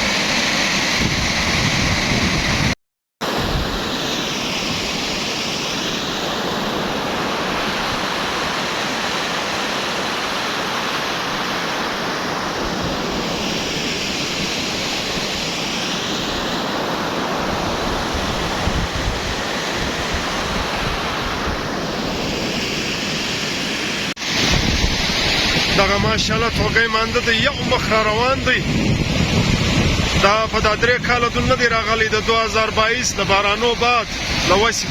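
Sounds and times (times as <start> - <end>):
wind buffeting microphone: 0.9 - 3.9, 17.2 - 22.6, 24.2 - 34.9
water rushing in a stream: 3.2 - 28.2.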